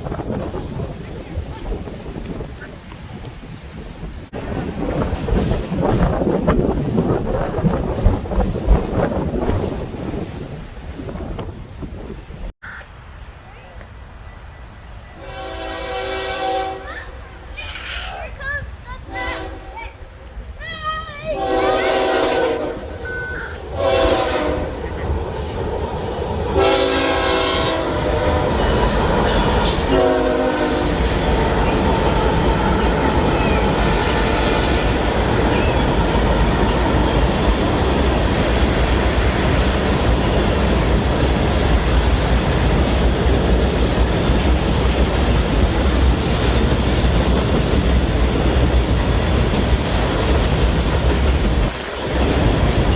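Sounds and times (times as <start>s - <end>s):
freight train rumbling past: 0.0s - 52.9s
train air horn blasts: 15.2s - 16.9s, 19.1s - 19.8s, 21.4s - 24.8s, 26.6s - 31.2s.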